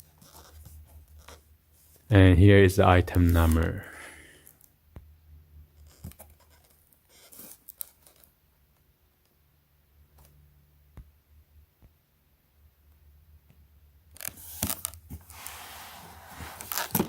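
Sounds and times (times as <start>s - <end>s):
packaging scrapes and taps: 16.2s - 17.0s.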